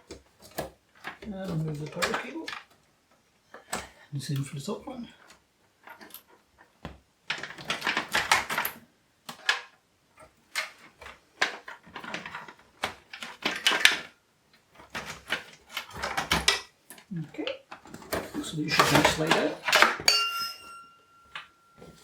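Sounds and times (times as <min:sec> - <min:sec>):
cables rattling being pulled off: 0:14.7 - 0:20.1.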